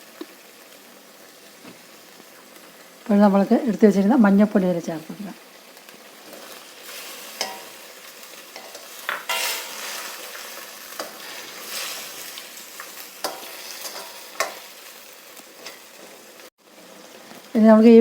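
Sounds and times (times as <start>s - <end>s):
chicken sizzling in a pot: 0.0s - 18.0s
spoon scraping against a pot: 6.3s - 7.8s, 8.5s - 10.3s, 13.2s - 14.7s.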